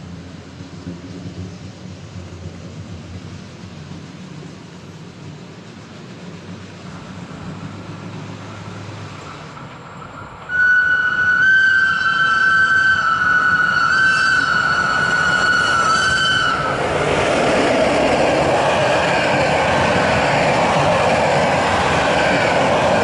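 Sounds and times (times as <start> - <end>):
model train rumble: 0.0 - 23.0
high-pitched wheel squeal: 10.0 - 17.1.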